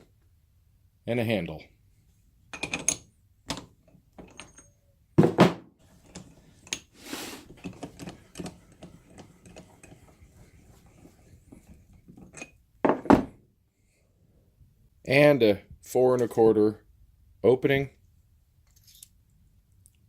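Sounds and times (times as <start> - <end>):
metal vise clunks and clicks: 2.6 - 4.7, 7.6 - 10.1
short metal scrape: 6.9 - 7.5.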